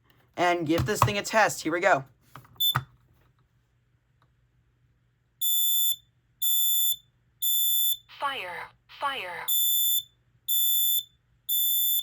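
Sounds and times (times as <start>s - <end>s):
loud high alarm beeps: 5.4s - 8.0s, 9.5s - 12.0s.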